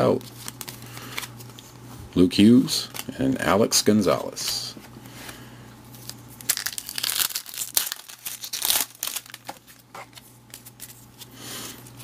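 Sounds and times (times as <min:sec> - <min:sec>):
plastic wrapper tearing and crinkling: 0:06.0 - 0:11.0.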